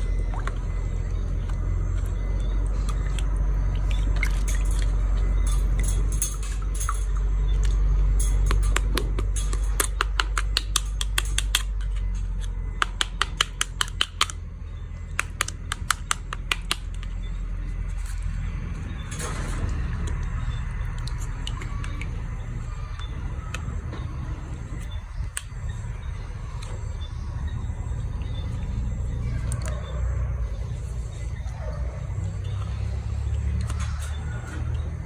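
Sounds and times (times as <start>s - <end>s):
low hum: 0.0s - 35.0s
toy clicking and tapping: 12.8s - 14.4s, 15.2s - 17.1s.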